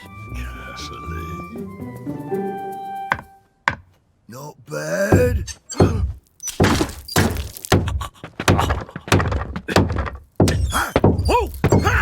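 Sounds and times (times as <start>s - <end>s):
heavy cartoon thuds and knocks: 5.1s - 12.0s.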